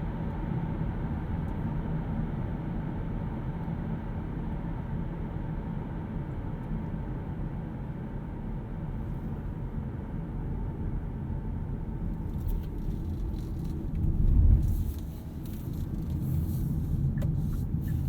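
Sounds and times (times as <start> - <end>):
tyre and road noise: 12.1 - 18.0.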